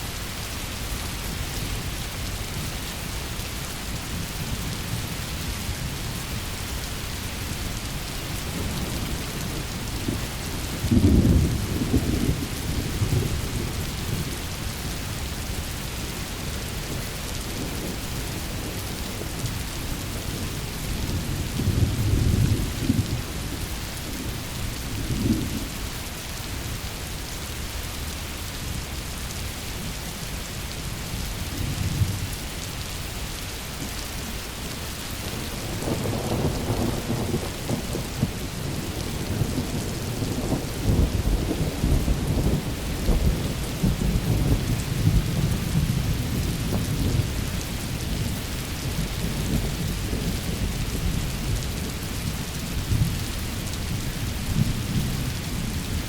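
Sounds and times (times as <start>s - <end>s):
heavy rain: 0.0s - 56.0s
rolling thunder: 8.4s - 14.4s, 35.3s - 51.9s.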